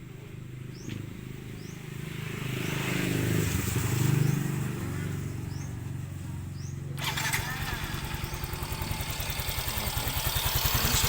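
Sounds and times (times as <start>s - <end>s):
scooter engine running: 4.6s - 11.0s.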